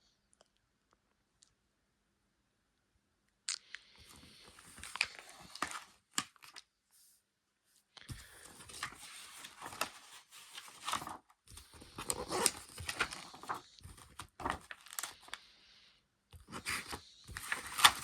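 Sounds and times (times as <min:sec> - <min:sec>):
book pages rustling: 0:04.0 - 0:07.1, 0:08.1 - 0:15.4, 0:16.4 - 0:18.0.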